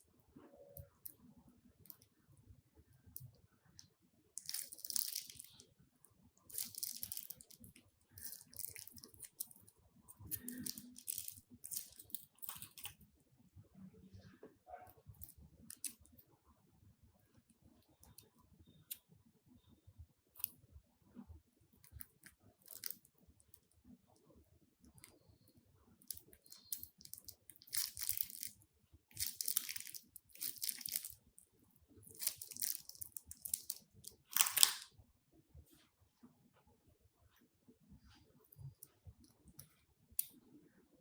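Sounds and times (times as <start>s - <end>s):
crunchy slime squeezed by hand: 6.5s - 9.5s, 32.1s - 34.9s.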